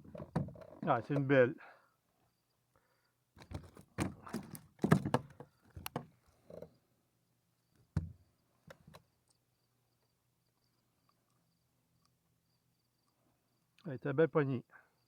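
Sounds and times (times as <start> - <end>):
knocks and thumps against kayak: 0.0 - 0.8, 3.4 - 6.7, 7.9 - 9.0.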